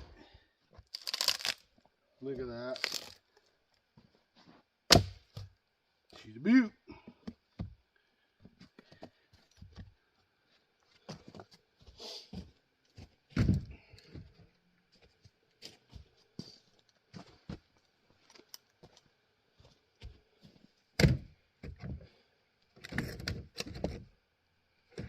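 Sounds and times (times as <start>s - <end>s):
axe splitting wood: 4.9s - 5.5s.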